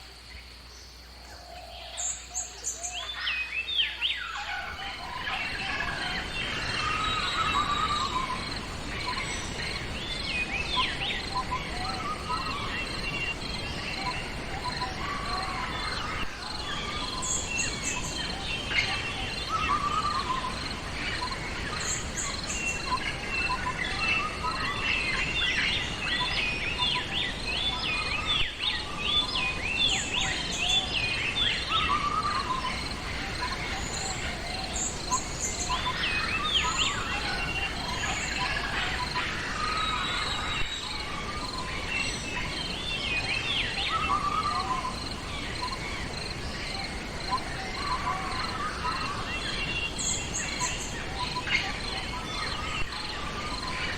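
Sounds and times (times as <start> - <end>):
birds singing and trilling: 0.0 - 53.9
pulsing insect chirp: 32.1 - 53.9.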